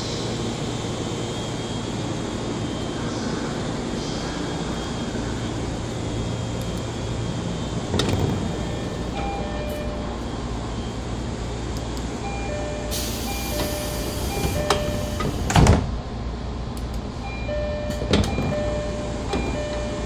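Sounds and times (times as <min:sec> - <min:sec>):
sliding door thumping shut: 0:07.9 - 0:08.8, 0:13.5 - 0:16.0
electronic door chime tones: 0:09.1 - 0:10.3, 0:17.2 - 0:20.0
hiss of air from door gear: 0:12.9 - 0:15.8.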